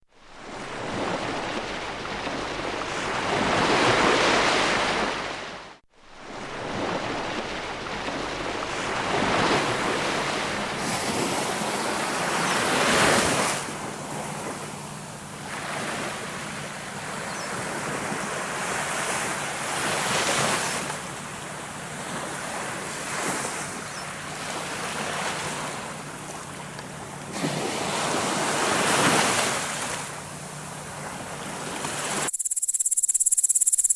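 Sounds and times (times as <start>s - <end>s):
sea waves washing ashore: 0.1s - 32.3s.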